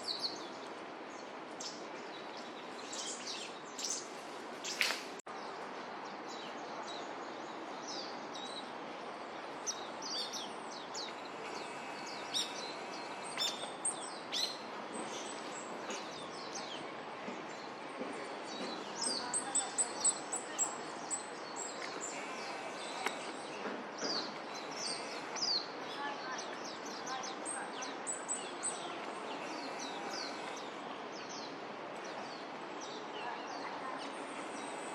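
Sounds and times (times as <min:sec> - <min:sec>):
background hiss: 0:00.0 - 0:05.2, 0:08.4 - 0:16.8, 0:19.0 - 0:32.7
songbirds chirping: 0:00.0 - 0:34.9.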